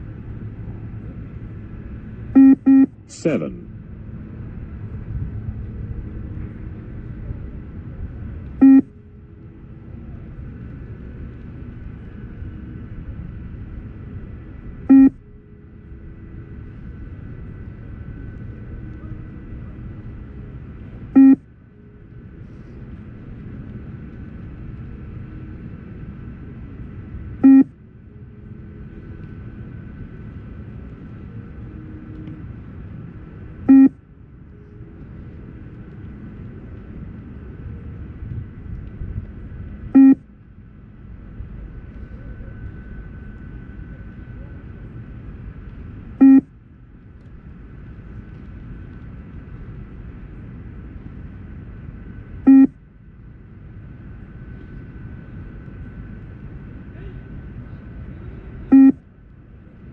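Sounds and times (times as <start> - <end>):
steady low rumble: 0.0 - 59.9
short beeps: 2.4 - 2.9, 8.6 - 8.9, 14.9 - 15.2, 21.2 - 21.4, 27.4 - 27.7, 33.7 - 34.0, 40.0 - 40.2, 46.2 - 46.5, 52.5 - 52.8, 58.7 - 59.0.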